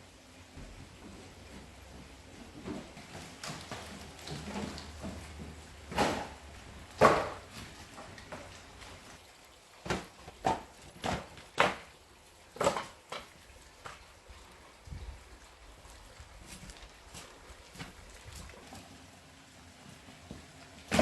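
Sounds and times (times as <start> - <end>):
firewood logs knocking on woodpile: 2.6 - 8.6, 9.8 - 11.9.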